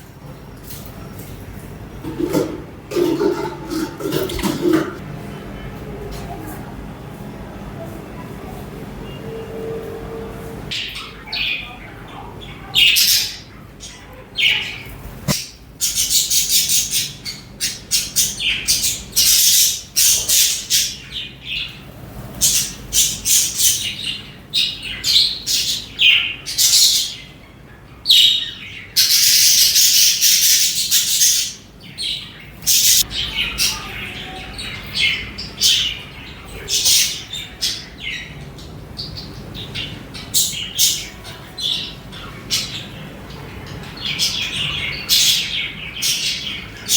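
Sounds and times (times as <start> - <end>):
budgerigars chirping and chattering: 10.7 - 46.9.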